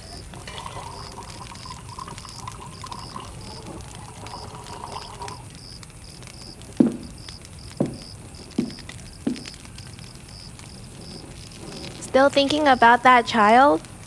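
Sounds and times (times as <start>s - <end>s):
deep thuds dropping in pitch: 6.8s - 7.2s, 7.8s - 9.6s.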